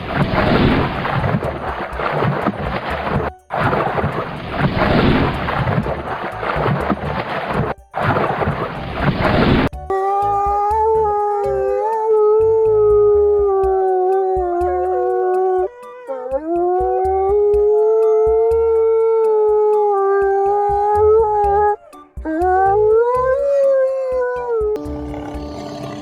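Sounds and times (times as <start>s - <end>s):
animal howling: 0.0s - 7.0s, 9.9s - 26.0s
low thumps: 0.0s - 9.9s.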